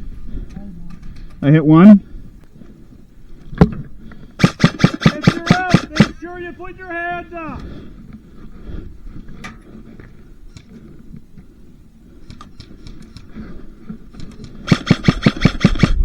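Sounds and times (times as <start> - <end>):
rapid airsoft rifle fire: 4.4 - 7.5, 14.4 - 16.0
airsoft gun shots: 4.4 - 7.6, 14.6 - 16.0.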